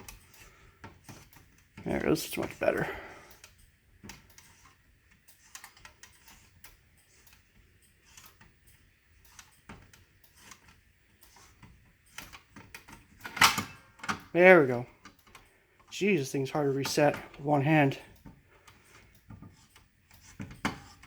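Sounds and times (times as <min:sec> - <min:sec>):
wrench clicking and scraping metal: 0:03.3 - 0:14.3.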